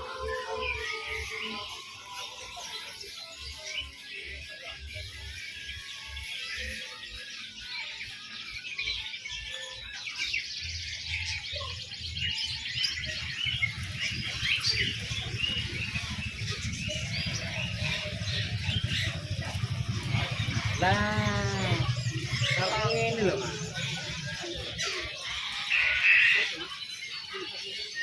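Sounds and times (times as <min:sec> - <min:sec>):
songbirds chirping chorus: 0:00.0 - 0:28.0
low rumble: 0:13.7 - 0:24.8.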